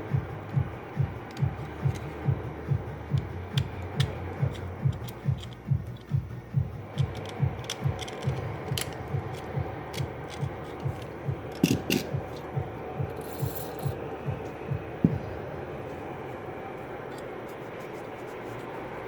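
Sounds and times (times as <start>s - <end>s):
rubbing and scraping with clicks: 3.2s - 6.2s, 6.9s - 12.5s
steady low thump: 14.0s - 15.8s.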